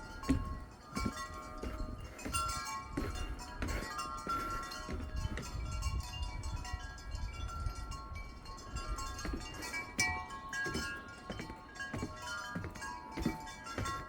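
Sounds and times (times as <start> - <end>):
wind rumble on microphone: 0.0 - 10.9
wind chimes ringing: 0.0 - 14.0.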